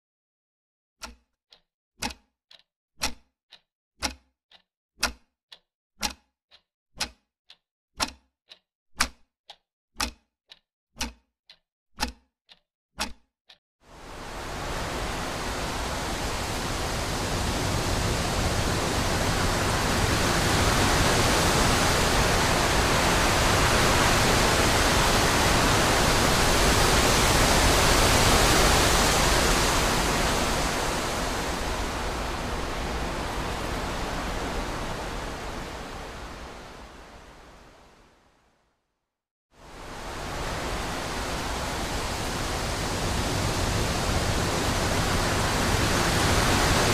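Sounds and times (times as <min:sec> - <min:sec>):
sharp ticking: 0:01.0 - 0:13.3
wind rushing through trees: 0:13.9 - 0:38.2, 0:39.6 - 0:46.9.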